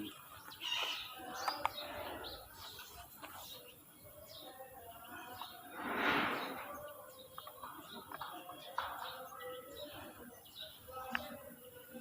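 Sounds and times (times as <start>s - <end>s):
birds chirping: 0.0s - 12.0s
rushing noise: 5.7s - 6.7s.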